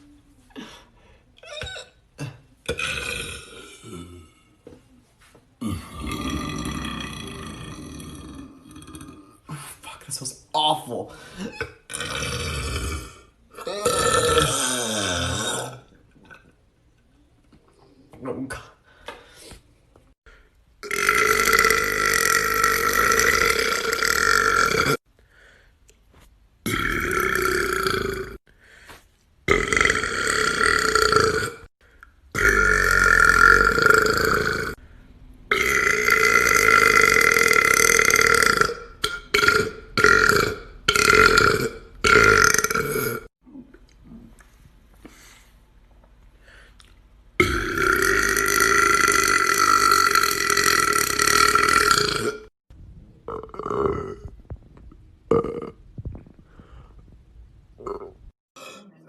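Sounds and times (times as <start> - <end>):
person belching loudly: 1.6 - 4.5, 5.6 - 9.4, 11.5 - 16.5, 20.8 - 25.0, 26.7 - 28.4, 29.5 - 31.7, 32.3 - 34.8, 35.5 - 43.3, 47.4 - 52.5, 53.3 - 54.3, 55.3 - 55.8, 57.8 - 59.0.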